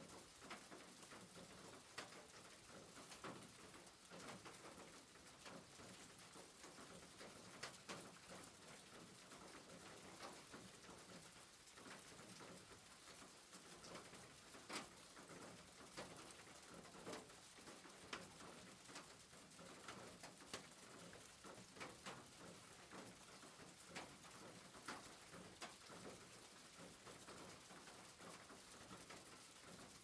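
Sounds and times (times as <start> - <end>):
rain hiss on roof: 0.0 - 30.0.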